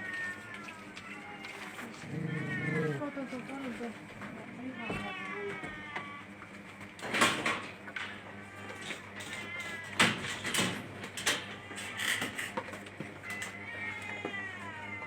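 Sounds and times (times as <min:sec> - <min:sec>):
cats meowing: 0:00.2 - 0:03.2.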